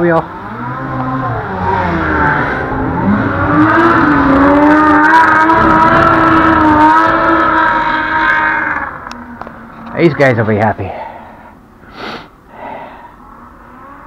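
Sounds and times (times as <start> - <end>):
snowmobile engine passing: 0.0 - 10.2, 13.2 - 14.0.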